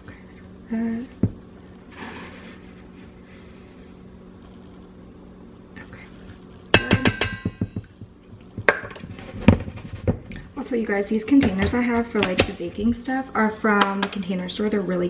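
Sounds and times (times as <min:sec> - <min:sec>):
kitchenware clinking: 0:06.8 - 0:07.8.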